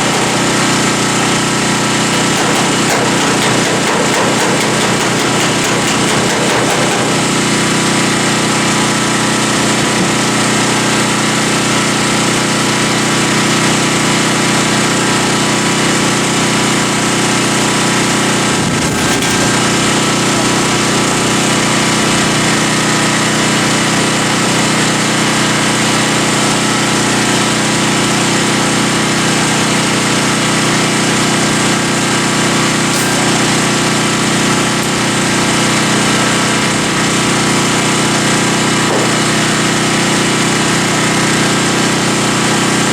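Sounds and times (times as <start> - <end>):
grinder on sheet metal: 0.0 - 9.0, 17.1 - 23.0, 29.1 - 42.9.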